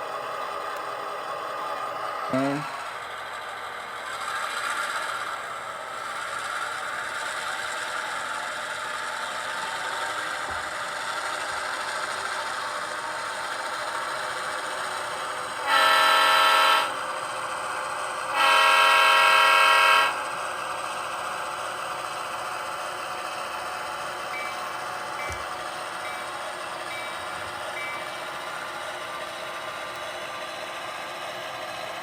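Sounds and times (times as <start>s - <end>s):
diesel engine idling through speaker: 0.1s - 4.2s, 5.0s - 32.0s
chime horn blasts: 15.7s - 16.9s, 24.4s - 24.6s.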